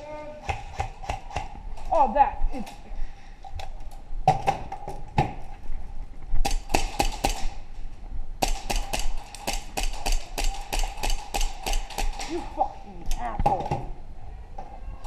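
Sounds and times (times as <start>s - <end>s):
airsoft guns firing: 6.4s - 7.6s, 8.4s - 12.6s.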